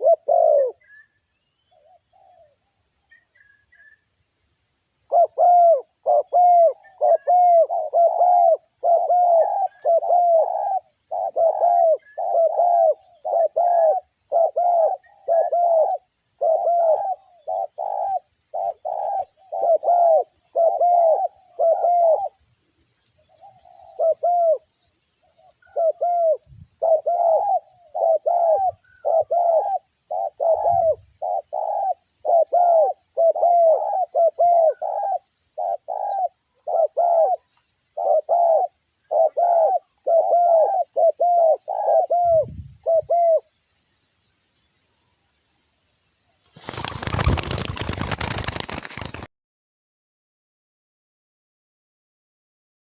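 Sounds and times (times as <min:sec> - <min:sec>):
doves cooing: 0:00.0 - 0:01.1, 0:05.1 - 0:22.4, 0:23.3 - 0:24.7, 0:25.4 - 0:43.5.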